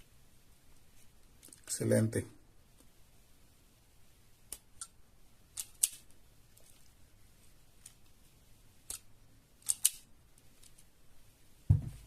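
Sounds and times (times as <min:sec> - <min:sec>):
sharp metal clicks and snaps: 0:04.5 - 0:06.1, 0:08.9 - 0:10.8.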